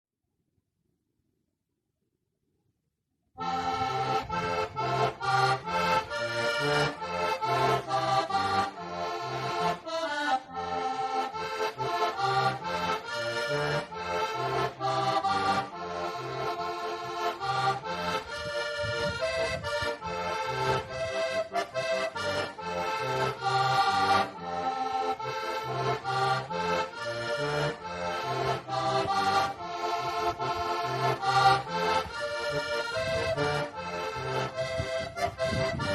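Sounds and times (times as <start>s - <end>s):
button accordion folk tune: 3.4s - 35.9s.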